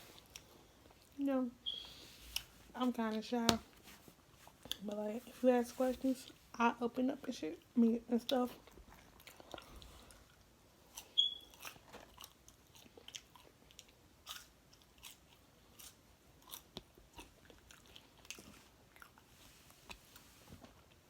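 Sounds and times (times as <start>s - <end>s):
person chewing food: 0.1s - 2.6s, 8.5s - 21.0s
high squeak: 11.2s - 11.5s.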